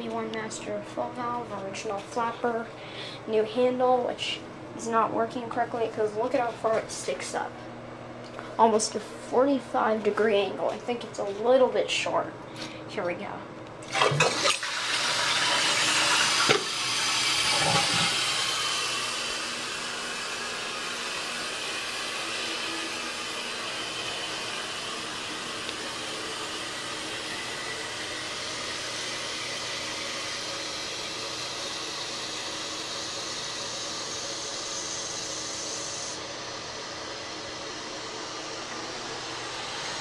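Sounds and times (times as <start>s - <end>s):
toilet fill valve hissing: 13.8s - 40.0s
toilet flushing: 13.8s - 40.0s.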